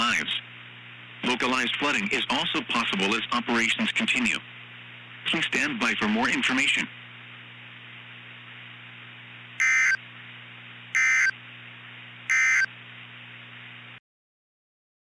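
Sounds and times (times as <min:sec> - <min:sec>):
steady hiss: 0:00.0 - 0:09.5
two-tone digital squawks: 0:09.6 - 0:10.0, 0:11.0 - 0:11.4, 0:12.3 - 0:12.7.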